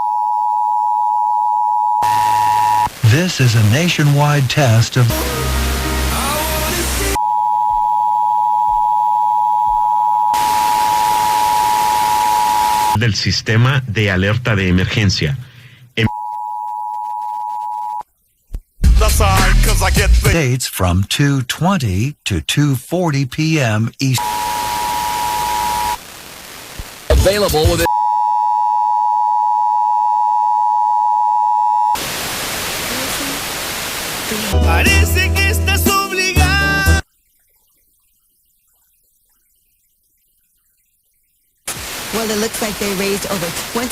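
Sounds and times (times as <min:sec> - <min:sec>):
radio static hiss: 0:02.0 - 0:07.2, 0:10.4 - 0:15.4, 0:24.0 - 0:27.9, 0:32.0 - 0:34.8, 0:41.7 - 0:43.9.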